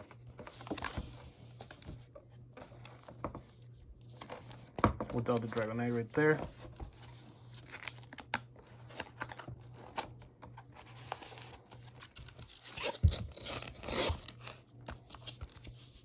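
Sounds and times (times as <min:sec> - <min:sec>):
packaging crinkling and rustling: 0:04.1 - 0:16.0.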